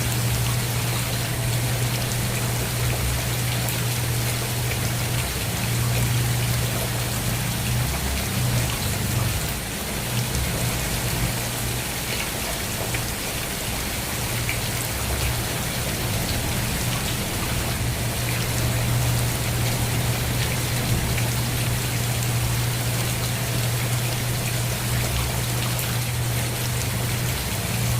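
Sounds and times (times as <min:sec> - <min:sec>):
steady rain falling: 0:00.0 - 0:27.9
steady low hum: 0:15.3 - 0:27.9.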